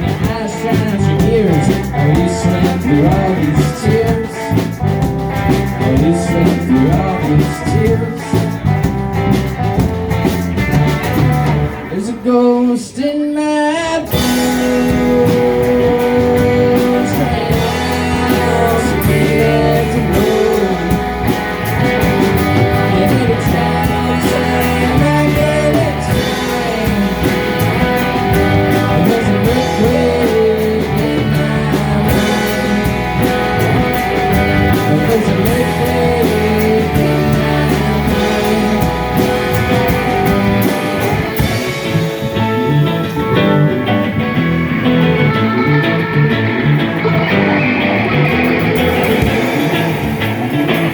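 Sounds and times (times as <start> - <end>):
live rock band playing: 0.0 - 50.9.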